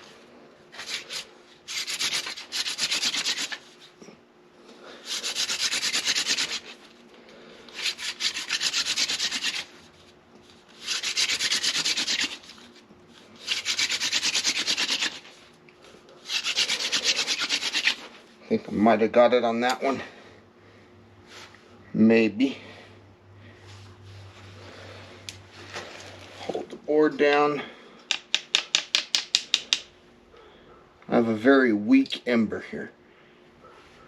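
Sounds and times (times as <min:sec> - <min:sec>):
spindle rasping on hearth board: 0:05.1 - 0:06.7, 0:07.8 - 0:09.7, 0:13.4 - 0:15.3, 0:16.3 - 0:18.1.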